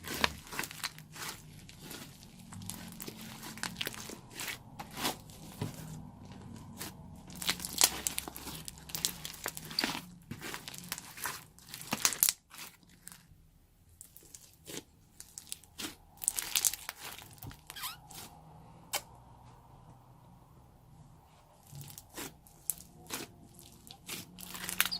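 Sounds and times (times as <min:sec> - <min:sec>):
slime crunching and crackling: 0:00.0 - 0:13.4, 0:14.0 - 0:19.0, 0:21.6 - 0:24.9.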